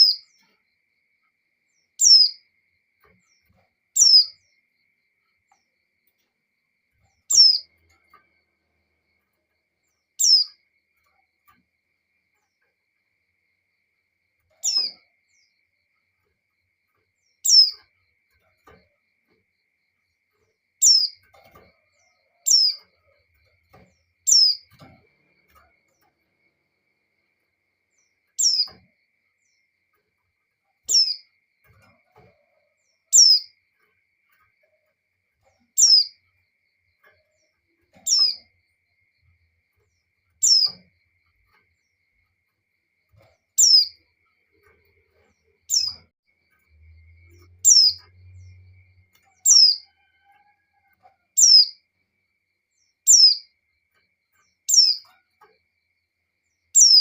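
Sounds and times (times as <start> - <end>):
bird high chirps: 0.0 - 0.6, 1.8 - 4.6, 7.0 - 8.4, 9.8 - 11.2, 14.4 - 15.6, 17.2 - 17.9, 20.8 - 26.2, 27.9 - 29.6, 30.8 - 33.6, 35.4 - 36.2, 37.2 - 38.6, 40.4 - 40.9, 43.1 - 46.1, 47.2 - 51.9, 52.8 - 53.6, 54.4 - 55.6, 56.6 - 57.0.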